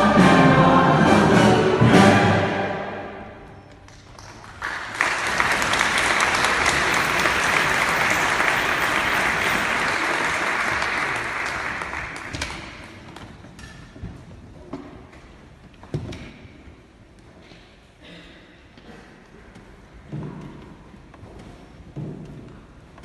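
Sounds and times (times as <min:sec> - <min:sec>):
audience applauding: 0:03.9 - 0:12.9.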